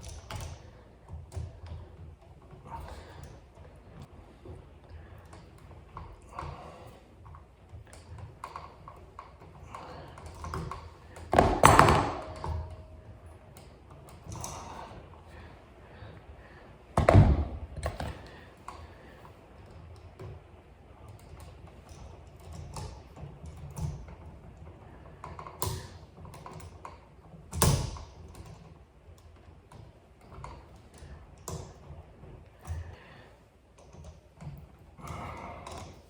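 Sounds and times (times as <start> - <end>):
loud knocks: 17.0 - 18.0.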